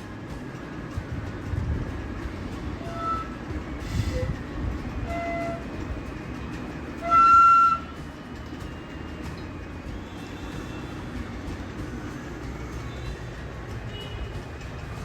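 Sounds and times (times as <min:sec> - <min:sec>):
low rumble: 0:00.0 - 0:15.0
loud horn toot: 0:02.8 - 0:04.4, 0:05.0 - 0:05.8, 0:07.0 - 0:08.0, 0:13.9 - 0:14.5.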